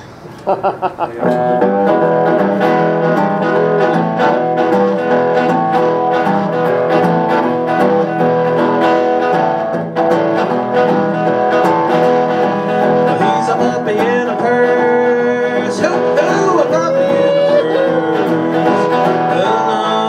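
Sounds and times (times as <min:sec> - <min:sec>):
rockabilly guitar over a beat: 0:00.6 - 0:20.0.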